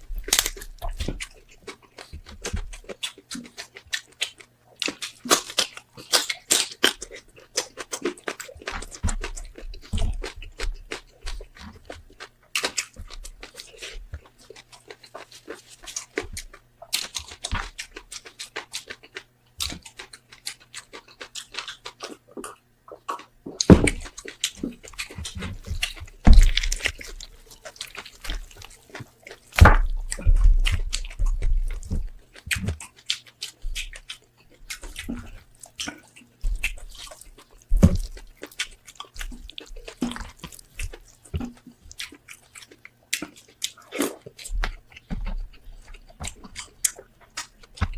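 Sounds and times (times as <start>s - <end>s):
wet chewing and lip-smacking: 0.0s - 47.9s
heavy thumps: 29.6s - 32.1s.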